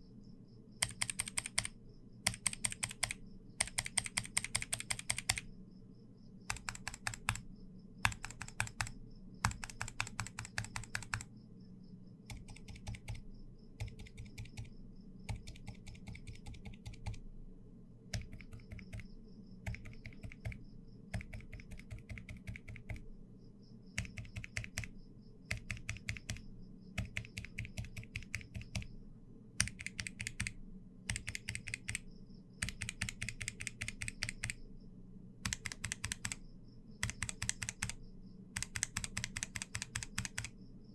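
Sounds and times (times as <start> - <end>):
mechanical keyboard typing: 0.8 - 1.7, 2.3 - 5.5, 6.5 - 7.4, 8.0 - 11.3, 12.3 - 13.2, 13.8 - 14.7, 15.3 - 17.2, 18.1 - 23.0, 24.0 - 24.9, 25.5 - 26.4, 27.0 - 28.9, 29.6 - 32.0, 32.6 - 34.6, 35.4 - 36.4, 37.0 - 38.0, 38.6 - 40.5.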